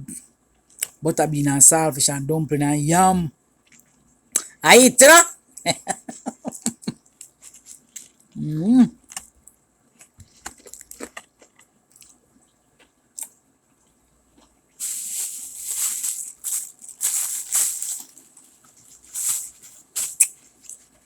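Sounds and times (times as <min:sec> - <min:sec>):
crunching and chewing fried chicken: 0:03.6 - 0:04.2, 0:05.9 - 0:21.0.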